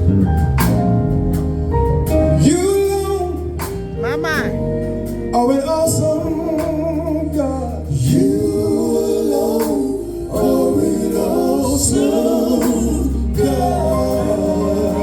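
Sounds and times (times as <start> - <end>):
sustained bass notes: 0.0 - 15.0
light beat: 4.0 - 4.6
male group singing gospel: 5.3 - 15.0.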